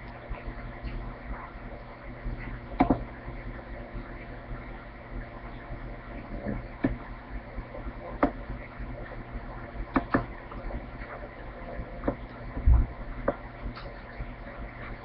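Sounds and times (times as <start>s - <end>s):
steady electrical hum: 0.0s - 15.0s
light clicks and taps at a desk: 9.9s - 10.3s
low thump: 12.6s - 12.9s.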